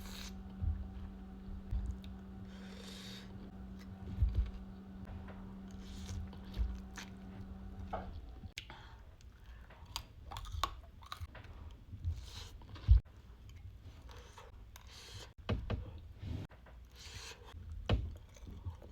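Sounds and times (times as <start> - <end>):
low steady hum: 0.0 - 14.0
crunchy biting and chewing: 9.8 - 11.3.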